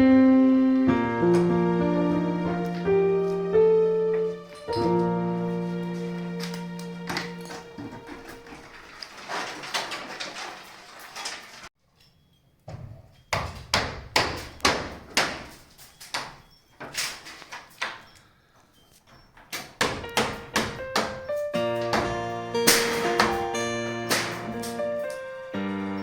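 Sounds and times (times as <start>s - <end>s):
sharp hammer blows: 21.8s - 24.7s.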